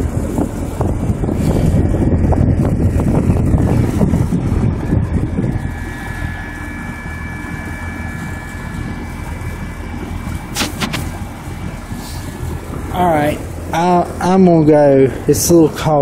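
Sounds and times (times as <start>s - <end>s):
air buffeting microphone: 0.0s - 16.0s
heat pump fan humming: 0.0s - 16.0s
sharp click: 10.6s - 11.1s.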